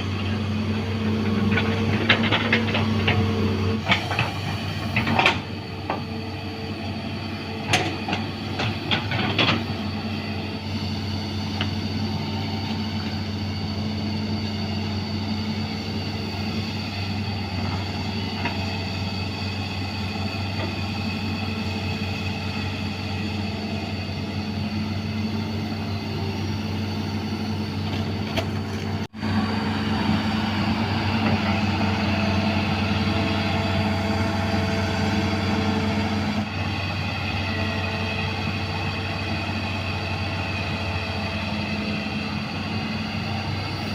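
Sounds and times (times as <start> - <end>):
excavator diesel engine running: 0.0 - 43.9.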